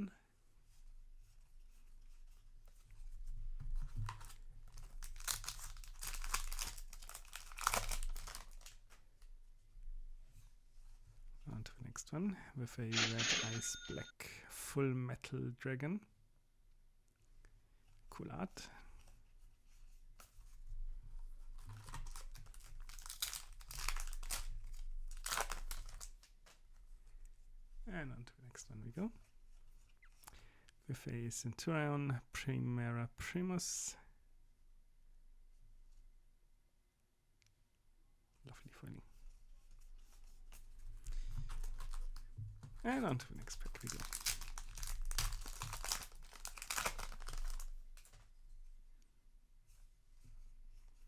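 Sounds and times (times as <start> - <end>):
foil wrapper crinkling and tearing: 4.7 - 8.9, 21.7 - 26.3, 43.4 - 48.2.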